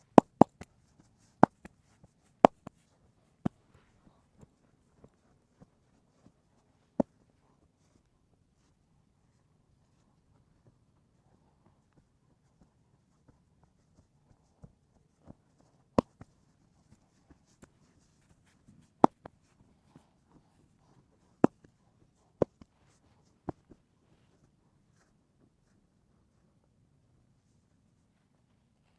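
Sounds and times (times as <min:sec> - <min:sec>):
hands rubbing and tapping: 0:00.0 - 0:06.4, 0:16.0 - 0:20.1.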